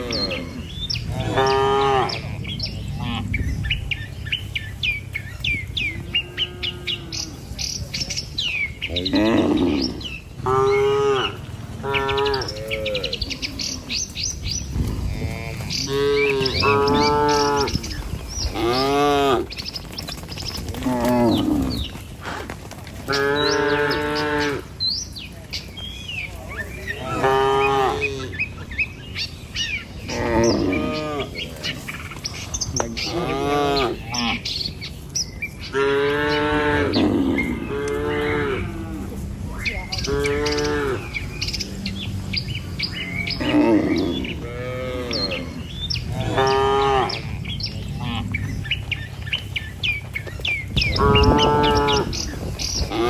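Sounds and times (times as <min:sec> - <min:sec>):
cattle mooing: 0:00.0 - 0:03.9, 0:05.9 - 0:07.6, 0:08.9 - 0:14.0, 0:15.0 - 0:19.5, 0:23.1 - 0:24.7, 0:26.9 - 0:28.5, 0:30.1 - 0:31.9, 0:32.8 - 0:34.5, 0:35.7 - 0:42.0, 0:43.0 - 0:49.0, 0:50.8 - 0:53.0
small birds chirping: 0:00.0 - 0:53.0.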